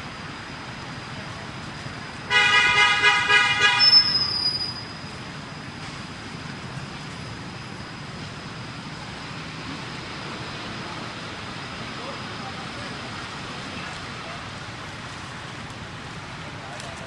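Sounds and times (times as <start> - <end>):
background rumble and hiss: 5.0 - 17.0.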